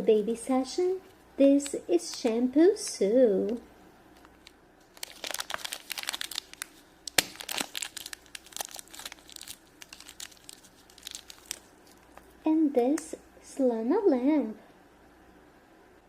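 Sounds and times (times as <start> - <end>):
plastic packaging crinkling and tearing: 4.2 - 12.4.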